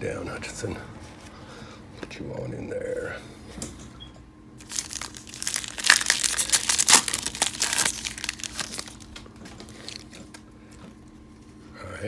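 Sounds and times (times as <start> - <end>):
foil wrapper crinkling: 4.6 - 10.4.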